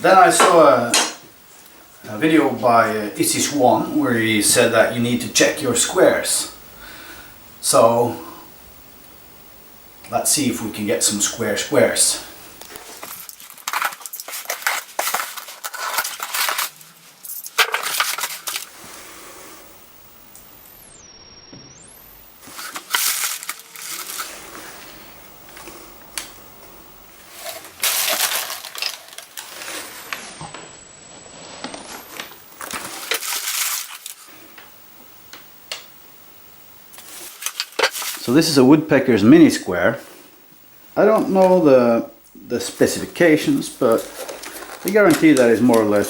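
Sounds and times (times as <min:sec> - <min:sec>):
packaging rustling and crinkling: 0:12.6 - 0:19.0, 0:22.4 - 0:25.8, 0:27.2 - 0:30.4, 0:31.3 - 0:34.5, 0:36.9 - 0:38.6, 0:41.0 - 0:41.7, 0:42.6 - 0:46.0.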